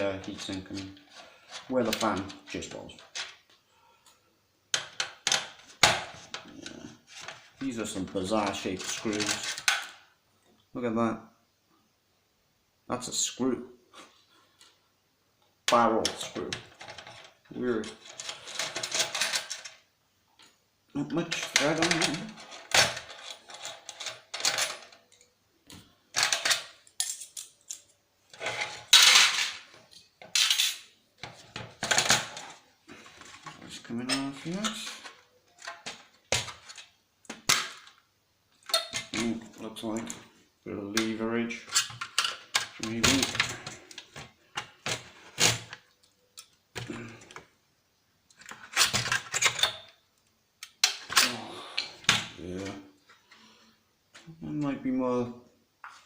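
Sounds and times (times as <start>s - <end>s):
metal and plastic parts clattering: 0.0s - 3.5s, 4.7s - 10.0s, 15.7s - 19.8s, 21.0s - 38.0s, 41.0s - 47.5s, 48.3s - 50.0s
metal parts clattering: 8.3s - 9.9s, 16.4s - 19.8s, 21.2s - 25.2s, 26.1s - 30.9s.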